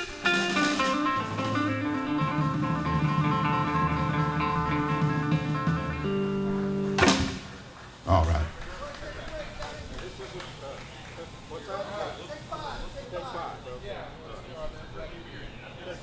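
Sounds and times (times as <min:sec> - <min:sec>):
blues guitar music: 0:00.0 - 0:07.4.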